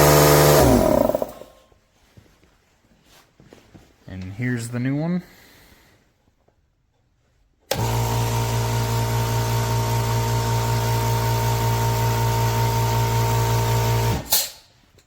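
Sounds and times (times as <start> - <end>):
air compressor running: 0.0 - 1.5, 7.7 - 14.6.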